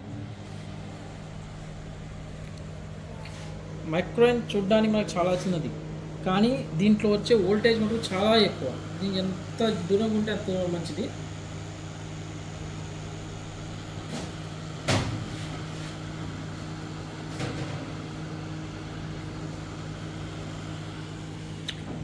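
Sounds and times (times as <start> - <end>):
microwave oven humming: 0.0 - 22.0.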